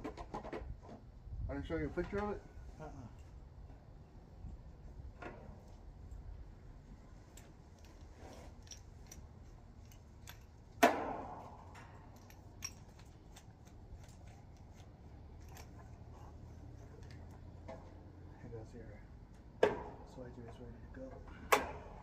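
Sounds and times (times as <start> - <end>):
small clicks of tools and metal parts: 7.3 - 10.8, 11.4 - 17.8.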